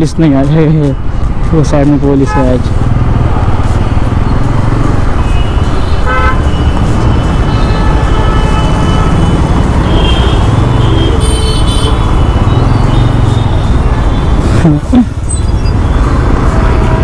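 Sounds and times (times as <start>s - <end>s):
engine and road rumble: 0.0s - 17.0s
vehicle horns honking: 2.2s - 2.8s, 5.2s - 14.6s, 15.8s - 17.0s.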